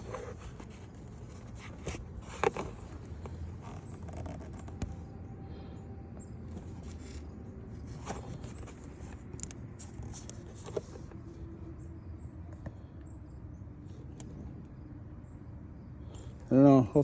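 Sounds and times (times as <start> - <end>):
handling clicks and scrapes: 0.0 - 5.1, 6.5 - 11.4.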